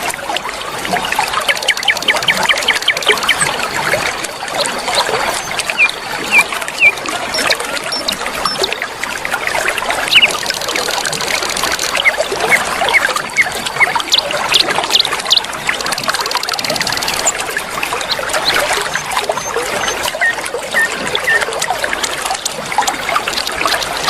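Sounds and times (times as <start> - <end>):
river water flowing: 0.0 - 24.0
small birds chirping: 1.0 - 3.6, 4.6 - 8.8, 10.0 - 21.6.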